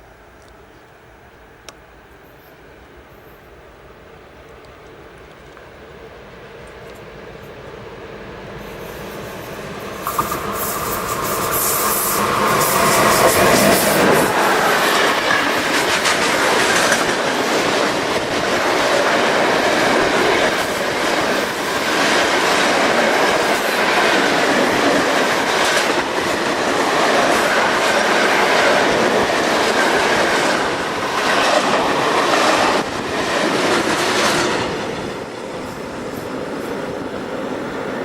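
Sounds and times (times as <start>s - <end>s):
train wheels clicking over rails: 8.5s - 38.0s.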